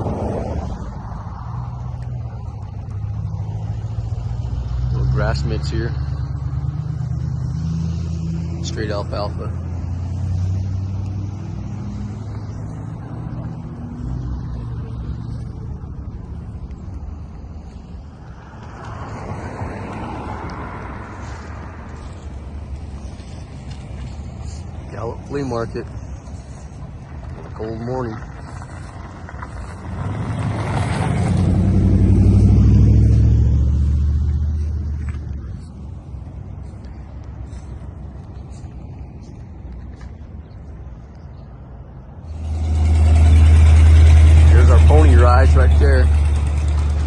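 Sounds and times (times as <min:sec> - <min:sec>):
vehicle driving past: 0:00.0 - 0:40.7, 0:42.2 - 0:47.0
vehicle engine idling: 0:21.0 - 0:30.1, 0:42.2 - 0:47.0.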